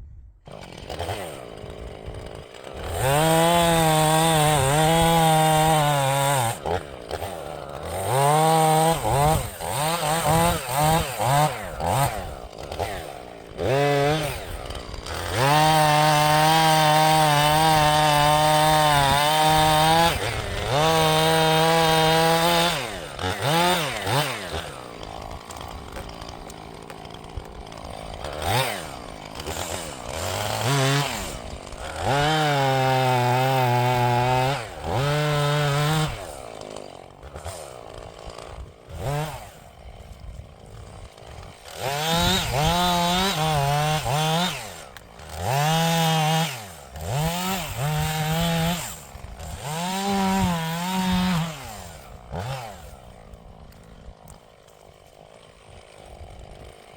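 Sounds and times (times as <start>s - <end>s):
chainsaw engine revving: 0.4s - 56.9s.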